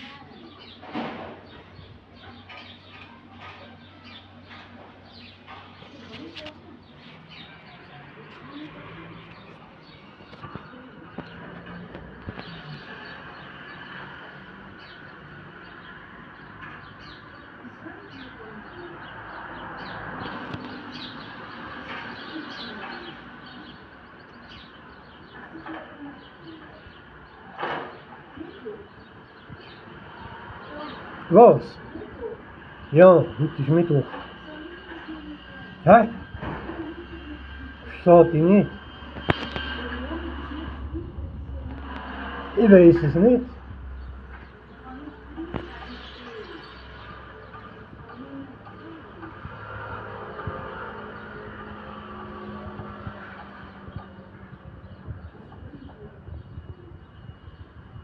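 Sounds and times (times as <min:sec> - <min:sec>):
birds chirping: 0:00.0 - 0:58.0
steady low hum: 0:28.4 - 0:58.0.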